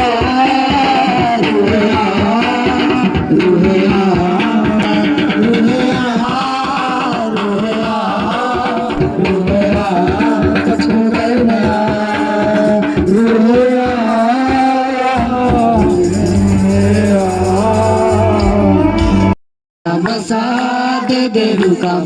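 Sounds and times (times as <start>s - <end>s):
hand percussion and shaker: 0.0s - 18.8s
bass line: 15.2s - 19.4s
sliding instrumental melody: 15.2s - 19.4s.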